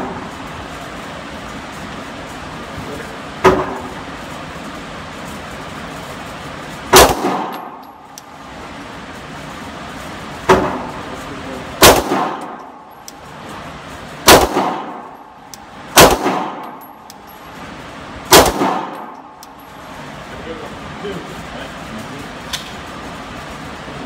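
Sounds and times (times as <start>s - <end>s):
pistol shots echoing: 6.9s - 7.9s, 11.8s - 12.9s, 14.2s - 17.1s, 18.3s - 19.4s.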